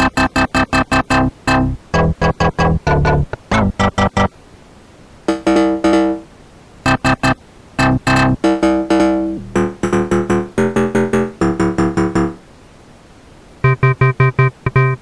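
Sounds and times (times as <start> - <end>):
plucked synth loop: 0.0 - 4.3, 5.3 - 6.3, 6.9 - 12.4, 13.7 - 15.0
synth chord stabs: 1.0 - 4.3, 5.3 - 6.3, 6.9 - 12.4.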